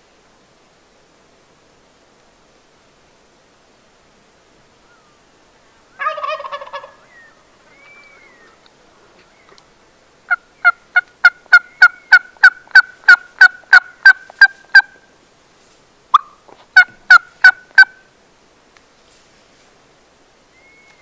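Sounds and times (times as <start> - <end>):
turkey yelps: 6.0 - 8.6.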